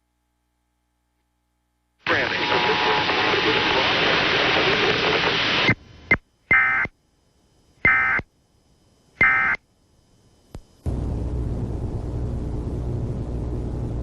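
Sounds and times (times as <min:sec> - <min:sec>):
hissing broadcast static: 0:02.0 - 0:06.2
screeching digital data tones: 0:02.1 - 0:06.9, 0:07.8 - 0:08.3, 0:09.2 - 0:09.6.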